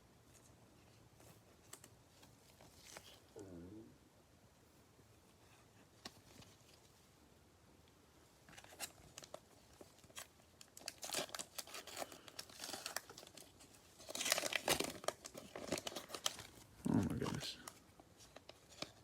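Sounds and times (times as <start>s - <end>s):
cellophane wrapper crinkling: 8.5s - 19.0s.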